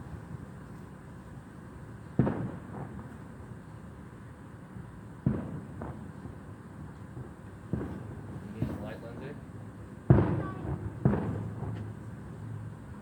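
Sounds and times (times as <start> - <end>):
firework bangs with echo: 2.2 - 3.2, 5.2 - 6.5, 7.2 - 12.6.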